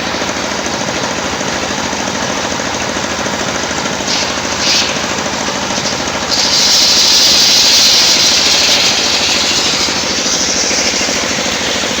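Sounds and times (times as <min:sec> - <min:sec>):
sawmill engine running: 0:00.0 - 0:12.0
saw blade cutting wood: 0:04.0 - 0:12.0.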